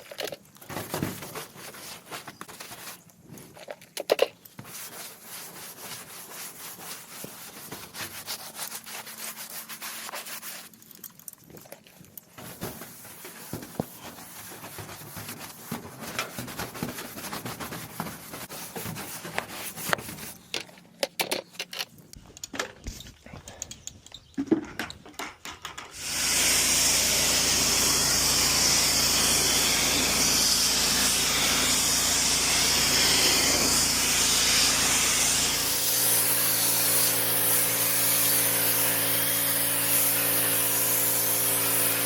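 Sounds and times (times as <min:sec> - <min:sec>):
stiff brush scrubbing wood: 0:00.9 - 0:03.2, 0:04.5 - 0:11.0, 0:12.4 - 0:20.5.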